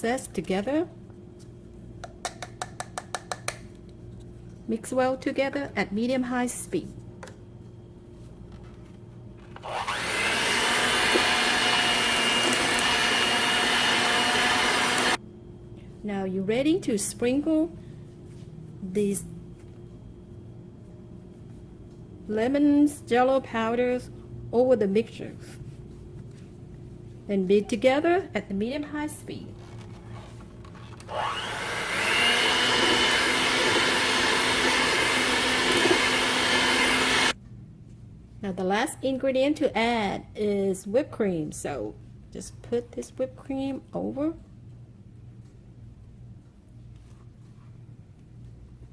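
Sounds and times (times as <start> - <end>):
electric mixer whining: 9.6 - 15.2, 31.1 - 37.4.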